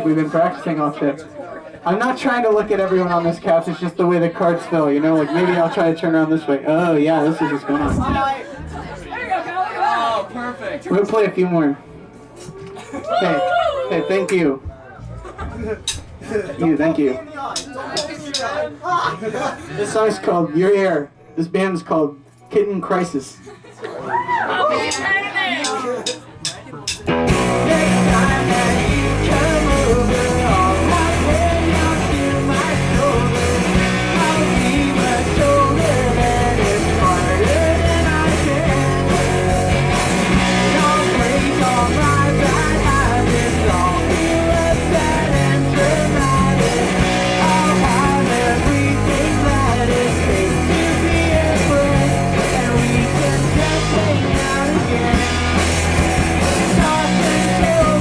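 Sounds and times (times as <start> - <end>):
bass guitar: 7.8 - 9.2, 26.9 - 58.0
punk rock band playing: 24.9 - 58.0
electric guitar: 27.0 - 58.0.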